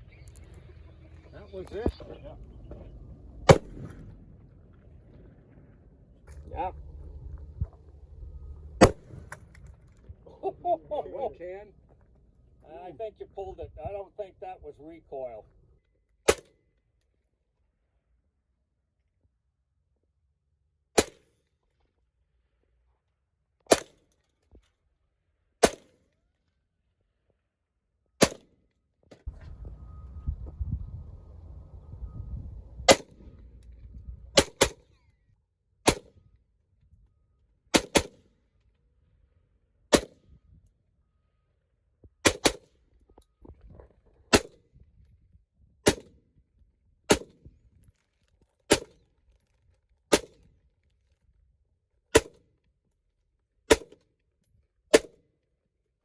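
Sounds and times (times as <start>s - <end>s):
low rumble: 0.0s - 15.7s, 29.3s - 34.8s
gunshots: 3.4s - 4.2s, 8.6s - 9.5s, 28.2s - 28.4s, 32.9s - 33.2s, 34.4s - 34.8s, 35.9s - 36.1s, 37.7s - 38.2s, 39.9s - 40.1s, 42.2s - 42.7s, 44.3s - 44.6s, 45.9s - 46.1s, 47.1s - 47.3s, 48.7s - 49.0s.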